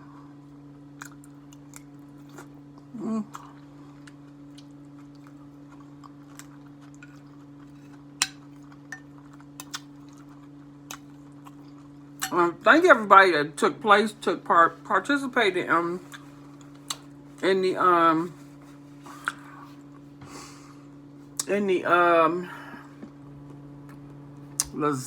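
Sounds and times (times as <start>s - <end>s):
low electrical hum: 0.0s - 25.0s
chewing and mouth sounds: 0.9s - 12.3s
short hummed vocal sound: 2.3s - 4.2s.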